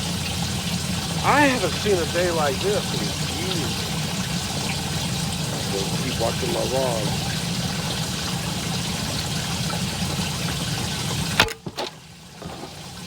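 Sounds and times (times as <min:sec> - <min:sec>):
boat motor running: 0:00.0 - 0:08.4
water wash: 0:00.0 - 0:11.4.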